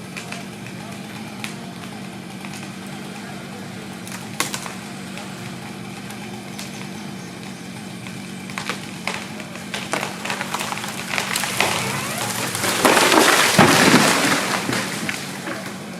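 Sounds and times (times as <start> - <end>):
low engine hum: 0.0 - 15.9
tree cracking and splintering: 0.0 - 15.9
crash of branches and wood: 3.8 - 15.9.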